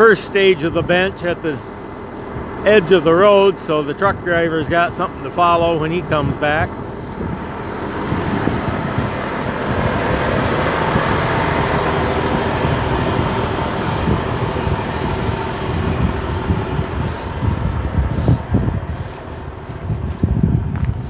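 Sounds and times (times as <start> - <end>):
grader engine drone: 0.0 - 21.0.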